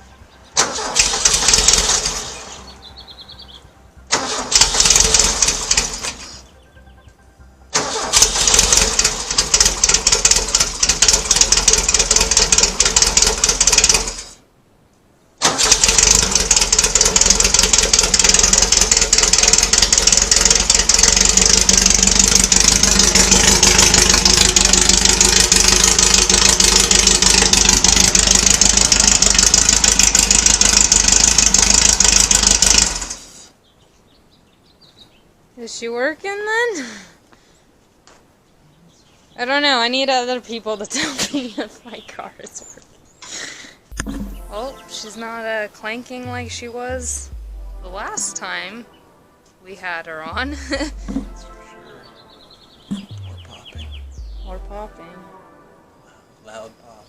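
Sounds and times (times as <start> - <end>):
car engine starting and running: 0.0 - 6.5, 7.6 - 14.3, 15.4 - 33.2, 43.9 - 44.8, 46.2 - 48.3, 50.3 - 51.6, 52.9 - 55.0.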